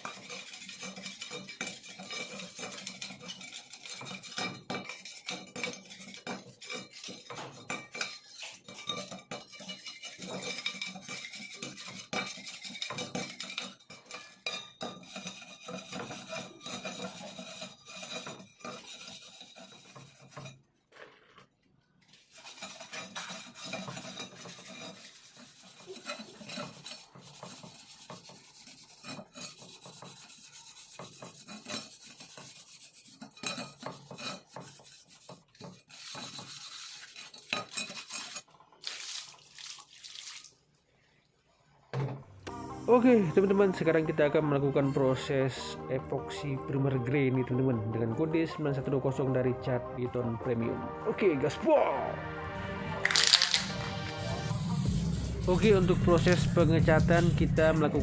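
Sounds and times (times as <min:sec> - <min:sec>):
metal scraping and clinking: 0:00.0 - 0:20.6, 0:22.1 - 0:38.8, 0:53.0 - 0:58.0.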